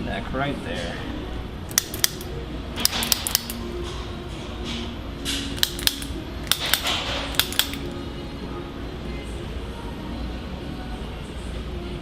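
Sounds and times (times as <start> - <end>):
spring-loaded instrument clicks: 1.7 - 3.6, 5.6 - 7.9.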